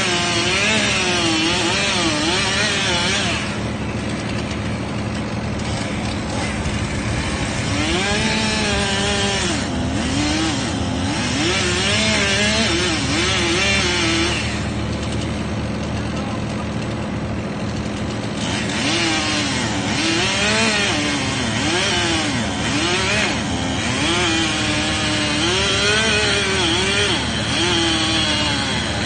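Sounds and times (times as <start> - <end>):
chainsaw cutting wood: 0.0 - 29.0
low engine hum: 3.4 - 13.3.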